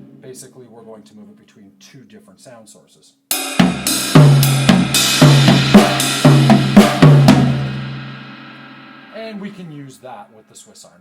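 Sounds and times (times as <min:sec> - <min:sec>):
cymbal wash: 0:03.3 - 0:10.0
drums played with sticks: 0:03.3 - 0:10.0.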